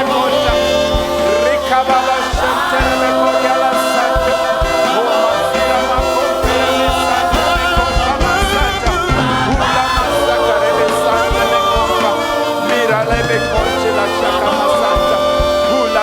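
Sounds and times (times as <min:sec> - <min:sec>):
band with steady beat: 0:00.0 - 0:16.0
choir singing: 0:00.0 - 0:16.0.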